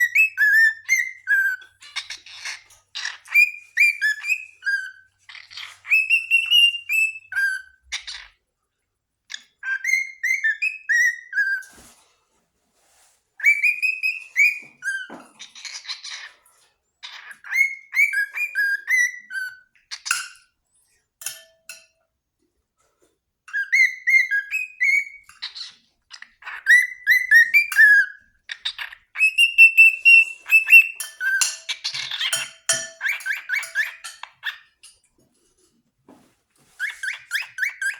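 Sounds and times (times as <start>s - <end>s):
cockatiel whistling: 0.0s - 1.7s, 3.3s - 5.0s, 5.8s - 7.8s, 9.6s - 11.7s, 13.4s - 15.2s, 17.4s - 19.6s, 23.5s - 25.3s, 26.4s - 34.6s, 36.8s - 37.9s.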